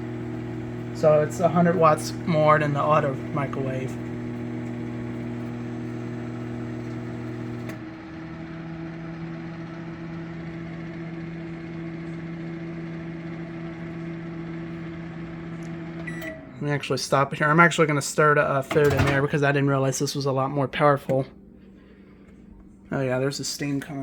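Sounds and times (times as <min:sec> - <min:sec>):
microwave humming: 0:00.0 - 0:19.8
microwave click: 0:00.1 - 0:07.8.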